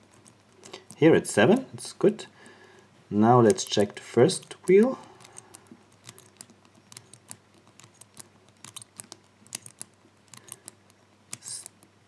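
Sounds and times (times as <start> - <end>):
padlock wheel clicks: 3.4 - 11.8.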